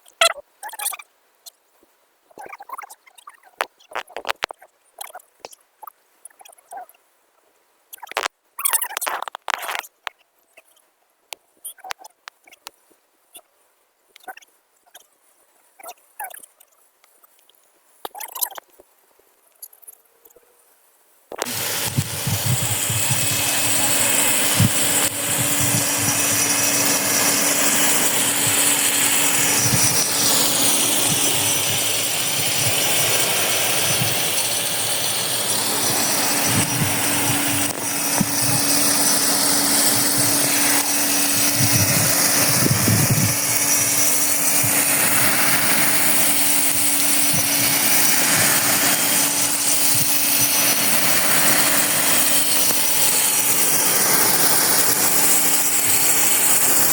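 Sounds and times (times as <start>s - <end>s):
faint steady hum: 12.2s - 56.9s
sprinkler spray hissing: 21.3s - 56.9s.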